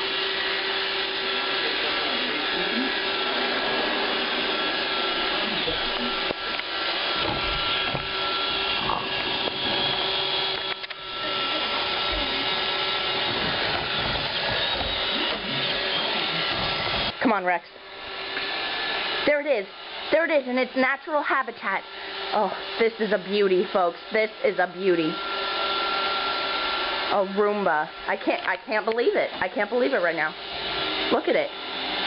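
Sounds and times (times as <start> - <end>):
robot vacuum running: 0.0 - 32.0.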